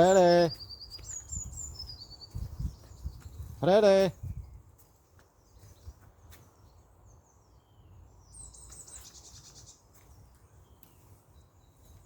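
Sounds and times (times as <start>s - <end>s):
bird chirps: 0.0s - 4.7s, 5.4s - 12.0s
wind rumble on microphone: 1.2s - 4.8s.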